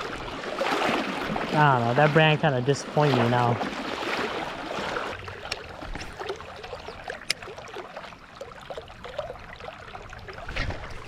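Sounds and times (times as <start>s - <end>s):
river water trickling: 0.0s - 11.0s.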